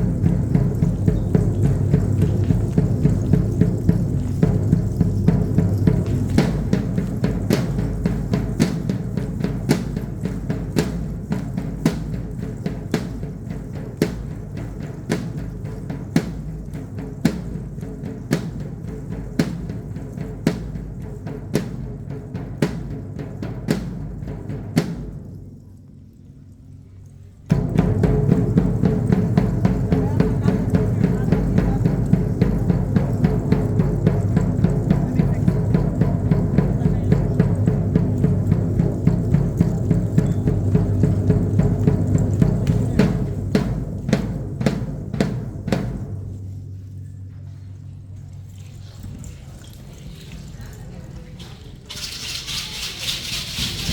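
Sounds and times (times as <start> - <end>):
drum strikes: 0.0 - 25.6, 27.5 - 46.7, 51.9 - 53.9
continuous low rumble: 0.0 - 53.9.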